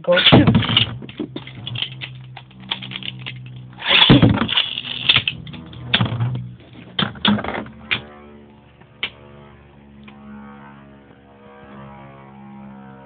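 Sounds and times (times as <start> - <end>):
spinning tops clashing: 0.6 - 6.0
spinning tops whirring: 0.6 - 6.5.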